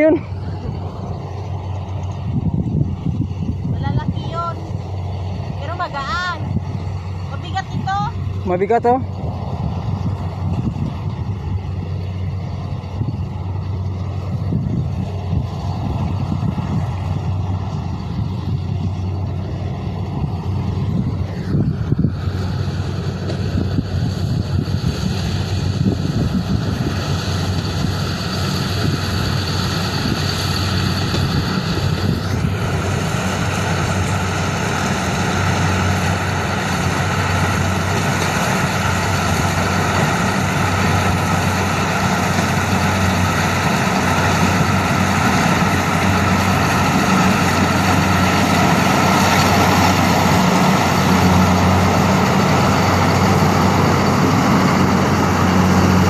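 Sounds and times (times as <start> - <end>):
heavy engine humming: 0.0 - 56.0
machinery grinding: 15.0 - 56.0.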